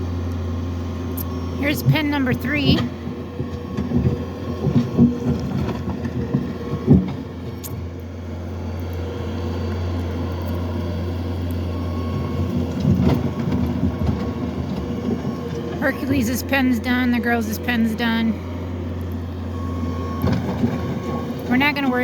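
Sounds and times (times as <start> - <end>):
farm machinery engine running: 0.0 - 22.0.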